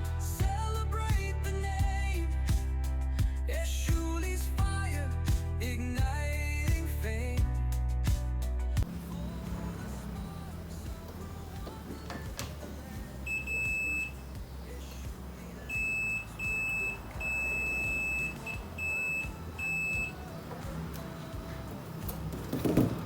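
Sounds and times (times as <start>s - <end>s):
multimeter buzzer beeping: 13.2s - 14.6s, 15.6s - 20.4s.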